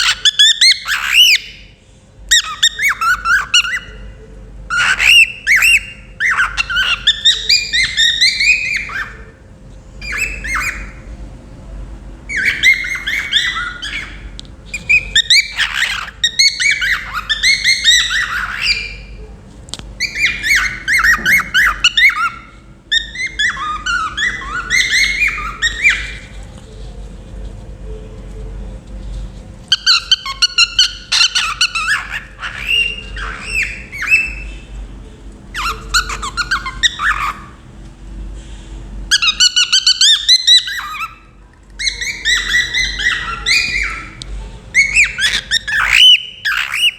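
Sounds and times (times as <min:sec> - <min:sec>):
cockatiel chirping: 0:00.0 - 0:01.7, 0:02.3 - 0:04.1, 0:04.7 - 0:09.4, 0:10.0 - 0:11.1, 0:12.3 - 0:19.2, 0:20.0 - 0:26.4, 0:29.7 - 0:34.7, 0:35.5 - 0:37.6, 0:39.1 - 0:46.9.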